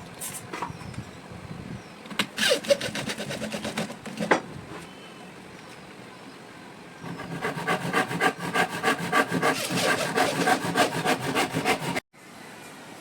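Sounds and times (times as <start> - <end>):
fast rhythmic scraping strokes: 7.0 - 12.0.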